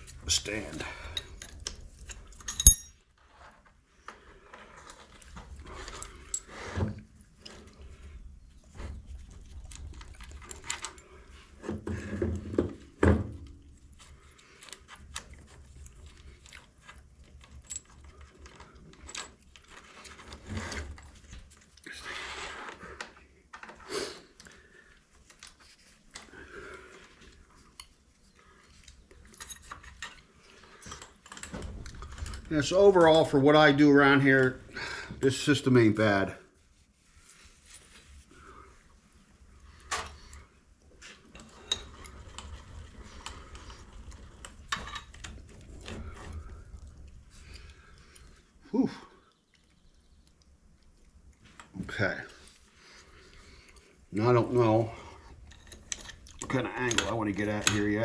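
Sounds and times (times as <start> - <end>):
metal tools clinking and clanking: 0.5 - 3.1, 29.2 - 33.2.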